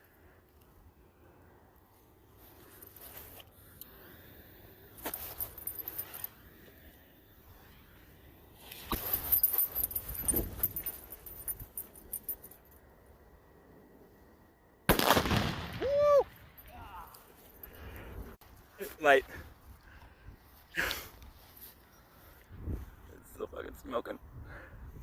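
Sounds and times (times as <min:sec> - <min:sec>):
fireworks crackling and fizzing: 0:14.9 - 0:17.3.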